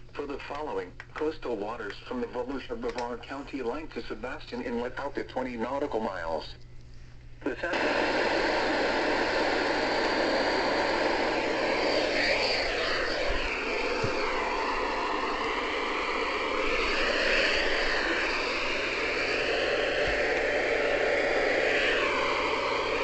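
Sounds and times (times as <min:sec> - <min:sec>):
radio static hiss: 0:07.4 - 0:23.0
wavering interference whistles: 0:07.8 - 0:23.0.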